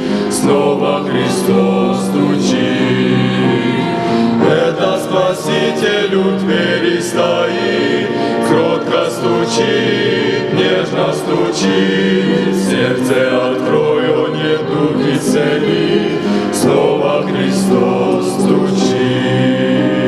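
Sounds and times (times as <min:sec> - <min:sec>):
choir singing a hymn: 0:00.0 - 0:20.0.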